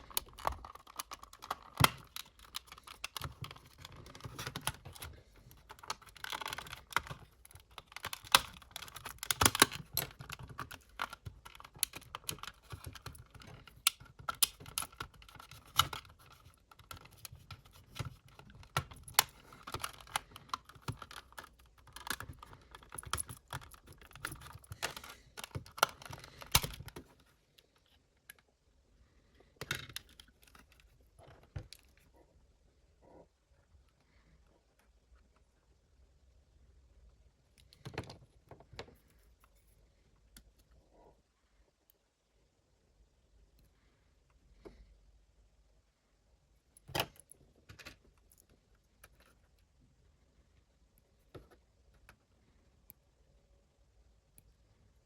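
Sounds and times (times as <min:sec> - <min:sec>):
hands clicking and tapping small parts: 0:00.0 - 0:28.5, 0:29.5 - 0:32.1, 0:46.8 - 0:49.7.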